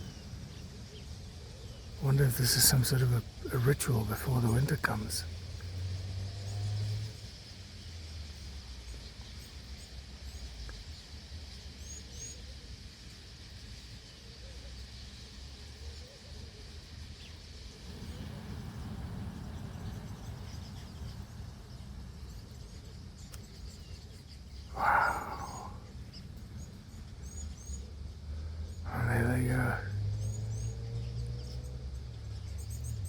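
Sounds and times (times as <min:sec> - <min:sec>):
faint high bird chirps: 0:11.6 - 0:28.1, 0:28.7 - 0:31.6
whir of many wingbeats: 0:17.9 - 0:21.7.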